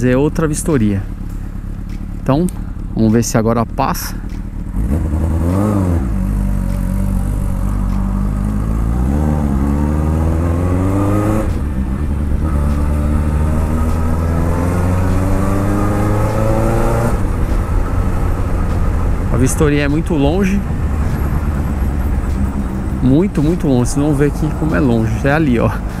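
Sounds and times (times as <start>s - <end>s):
motorcycle engine revving and accelerating: 0.0s - 26.0s.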